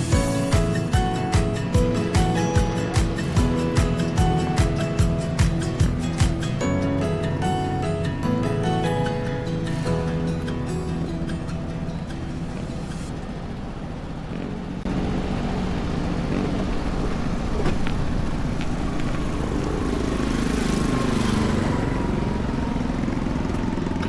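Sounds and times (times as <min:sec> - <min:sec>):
engine running: 0:00.0 - 0:24.0.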